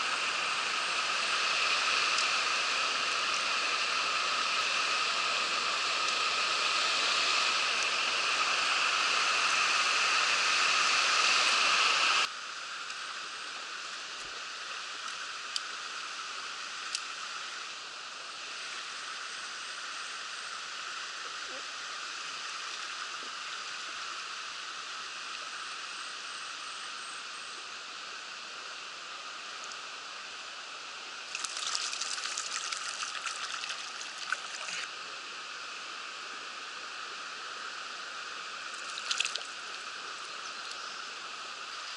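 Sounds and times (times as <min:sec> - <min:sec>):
stream water rushing: 0:31.1 - 0:36.2, 0:36.9 - 0:41.9
crackling noise: 0:31.2 - 0:34.9, 0:38.6 - 0:41.9.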